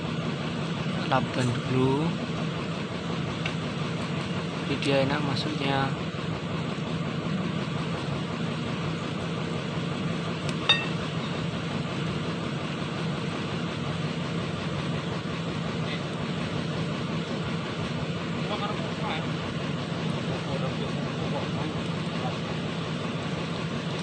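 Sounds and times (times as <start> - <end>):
engine idling: 0.0 - 24.0
sharp metallic clink: 10.6 - 11.2.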